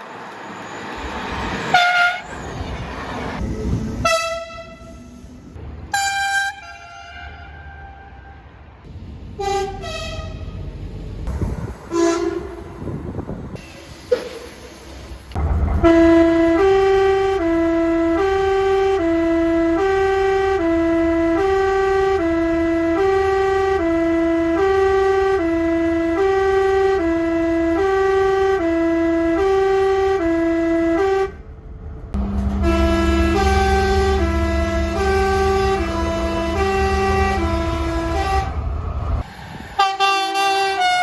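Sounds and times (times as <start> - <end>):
low engine rumble: 0.0 - 40.6
two-tone horn: 1.7 - 2.3, 4.0 - 5.2, 5.9 - 8.4, 9.4 - 10.5, 11.9 - 13.0, 15.8 - 31.4, 32.2 - 38.7, 39.8 - 41.0.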